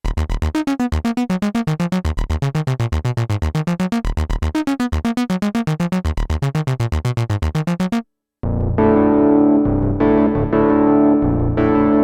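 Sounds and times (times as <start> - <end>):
synth bass line: 0.0 - 11.8
synthesizer plucked notes: 0.0 - 12.0.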